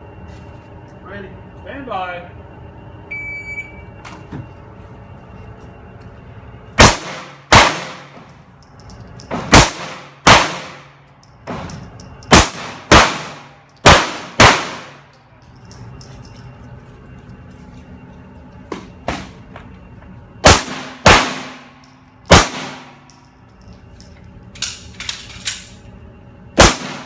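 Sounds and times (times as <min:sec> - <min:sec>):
shot timer beep: 0:03.1 - 0:03.9
pistol shots echoing: 0:06.8 - 0:08.2, 0:09.5 - 0:10.9, 0:12.3 - 0:15.0, 0:20.4 - 0:23.1, 0:26.6 - 0:27.0.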